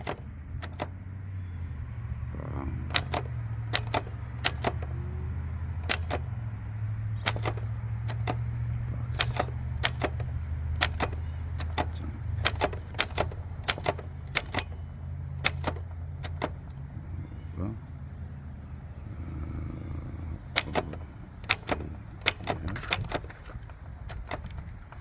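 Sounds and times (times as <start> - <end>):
typewriter typebars clacking: 0.0 - 0.9, 2.8 - 6.4, 7.1 - 16.9, 20.4 - 25.0
steady low hum: 0.0 - 25.0.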